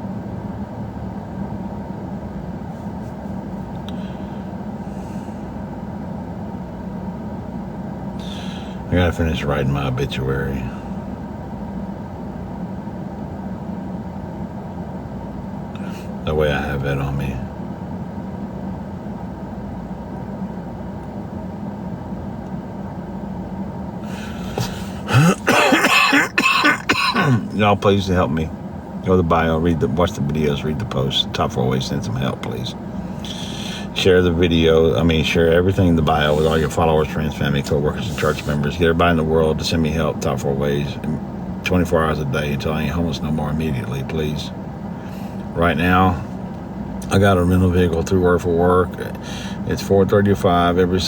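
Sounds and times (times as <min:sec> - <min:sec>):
vehicle engine rumble: 0:00.0 - 0:51.0
man talking: 0:08.2 - 0:10.9, 0:15.8 - 0:17.5, 0:27.1 - 0:44.5, 0:45.5 - 0:46.3, 0:47.0 - 0:51.0.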